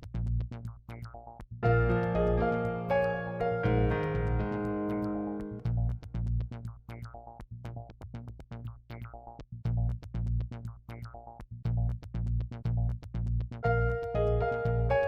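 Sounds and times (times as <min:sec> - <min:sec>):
synthesizer melody: 0:01.6 - 0:05.6, 0:13.6 - 0:15.0
drum machine beat: 0:01.6 - 0:05.9.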